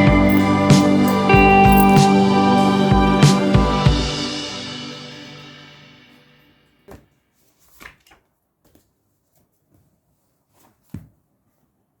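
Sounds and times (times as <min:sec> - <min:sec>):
background music: 0:00.0 - 0:06.3.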